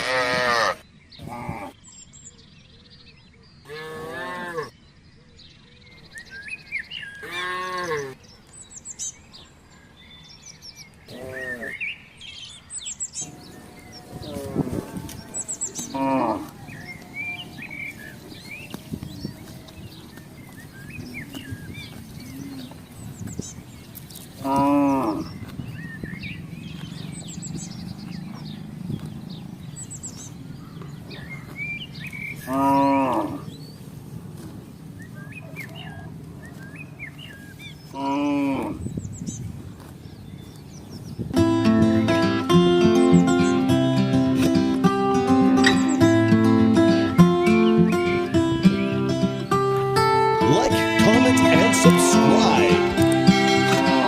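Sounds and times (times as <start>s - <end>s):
cattle mooing: 0.0s - 1.7s, 3.7s - 4.7s, 7.2s - 8.2s, 13.2s - 21.6s, 24.4s - 25.4s, 32.4s - 33.5s, 50.4s - 54.0s
small birds chirping: 0.0s - 54.0s.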